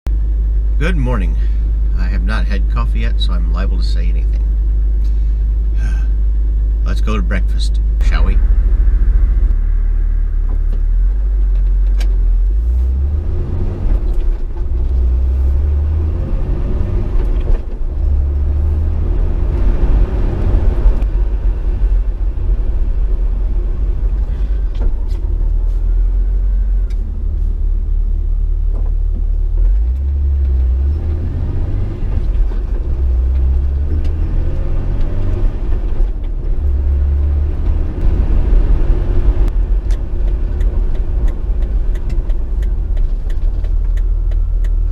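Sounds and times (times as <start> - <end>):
car engine and road rumble: 0.0 - 44.9
engine whine rising: 0.1 - 44.9.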